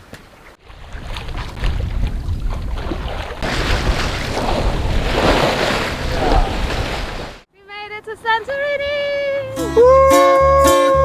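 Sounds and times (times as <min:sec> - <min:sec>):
water rushing past hull: 0:00.4 - 0:07.5
wind buffeting microphone: 0:00.7 - 0:09.4.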